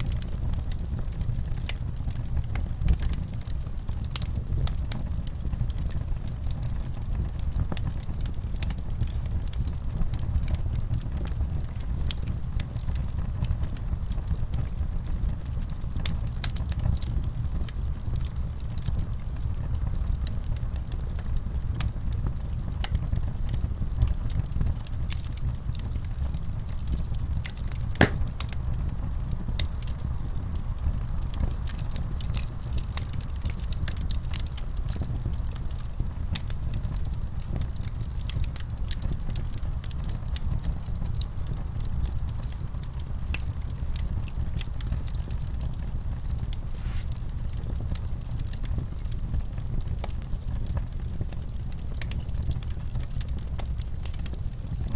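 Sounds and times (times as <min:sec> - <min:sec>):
fire flames rumbling: 0:00.0 - 0:54.9
wood fire crackling and snapping: 0:00.0 - 0:54.9.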